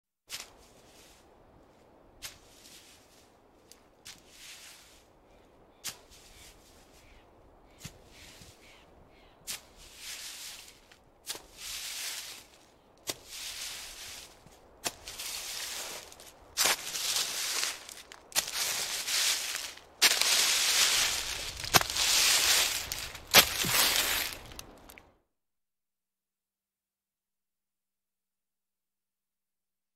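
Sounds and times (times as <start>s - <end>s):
monster footsteps with dragging foot: 16.6s - 25.0s.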